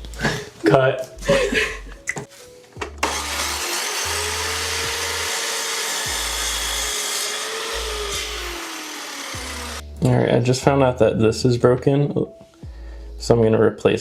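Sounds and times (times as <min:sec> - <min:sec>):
power saw cutting wood: 0:03.0 - 0:09.8.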